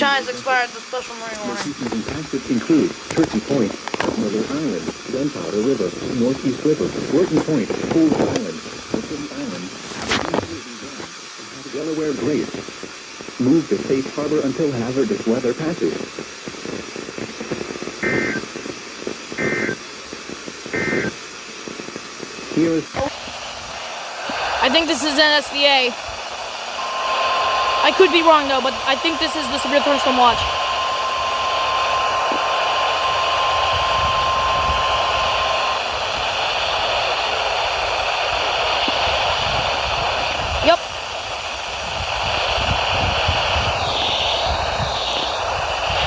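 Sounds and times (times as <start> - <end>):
radio static hiss: 0.0 - 46.0
digital data tone bursts: 18.0 - 18.5, 19.4 - 19.8, 20.7 - 21.2.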